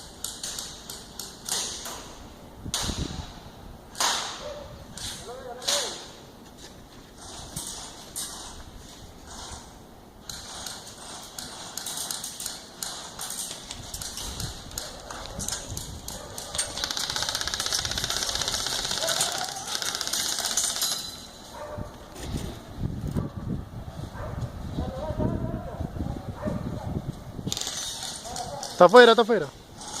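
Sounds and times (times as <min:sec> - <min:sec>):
airsoft guns firing: 0:16.3 - 0:21.3, 0:27.5 - 0:28.8.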